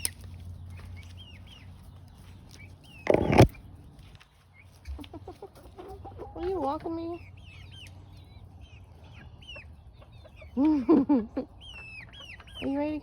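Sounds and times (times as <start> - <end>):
chickens clucking: 0.0 - 13.0
high chirping calls: 6.9 - 10.6, 11.4 - 13.0.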